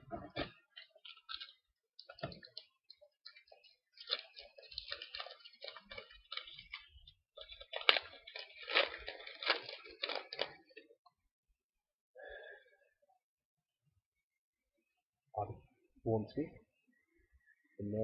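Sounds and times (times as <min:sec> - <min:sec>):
foil pack tearing and crinkling: 0:00.8 - 0:11.0.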